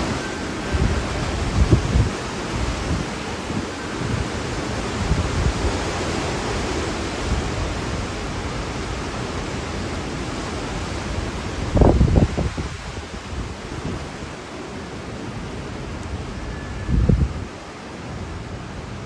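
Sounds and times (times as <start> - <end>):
strong wind rushing: 0.0 - 8.4, 10.8 - 14.4, 16.2 - 17.6
wind buffeting microphone: 0.0 - 8.4, 10.6 - 14.5, 15.2 - 17.6.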